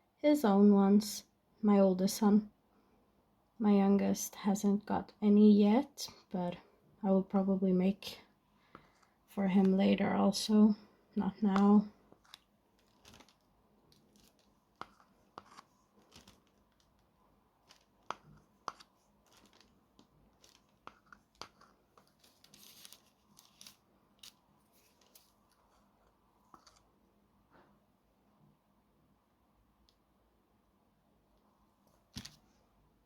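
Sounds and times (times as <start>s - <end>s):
objects rustling on a table: 11.5s - 26.9s, 32.1s - 32.6s.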